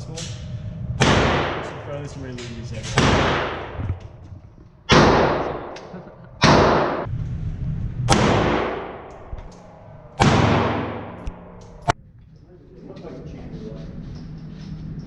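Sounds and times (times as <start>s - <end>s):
gunshots with echo: 1.0s - 2.2s, 2.8s - 4.0s, 4.9s - 7.1s, 8.1s - 11.9s.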